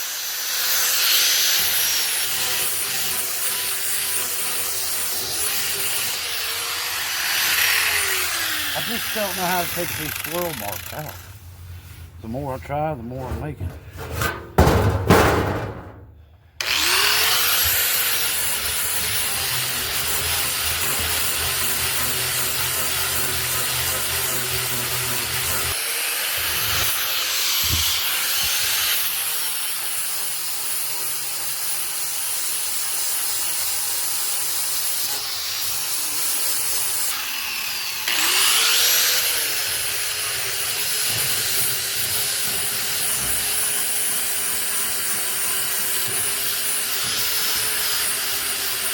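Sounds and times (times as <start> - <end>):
angle grinder sanding wood: 0.0 - 14.1, 16.6 - 48.9.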